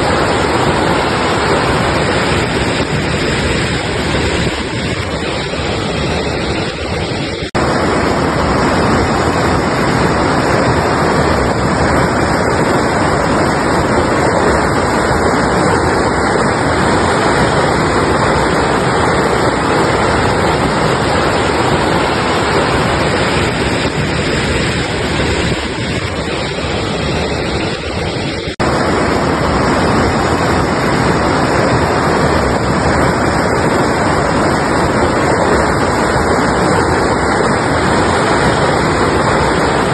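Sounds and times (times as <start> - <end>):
river rushing: 0.0 - 39.9.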